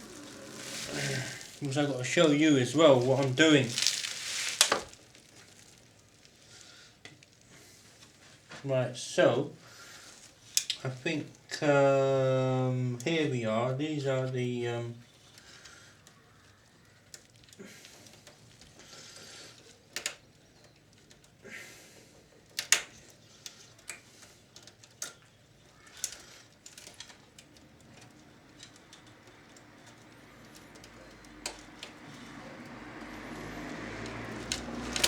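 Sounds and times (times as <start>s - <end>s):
hands and tools clicking on parts: 10.0s - 11.6s, 15.2s - 35.0s.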